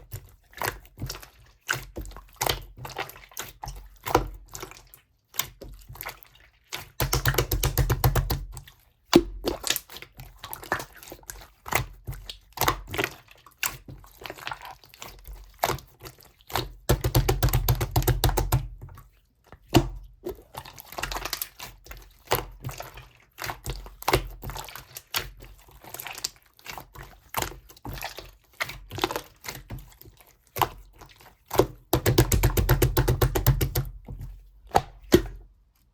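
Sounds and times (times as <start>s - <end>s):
slime rapid crackling: 32.0s - 34.0s.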